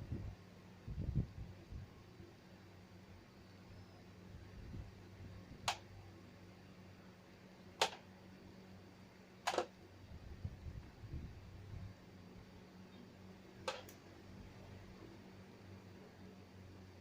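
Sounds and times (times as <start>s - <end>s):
steady low hum: 0.0s - 17.0s
sharp clicks: 5.6s - 5.8s, 9.5s - 9.7s.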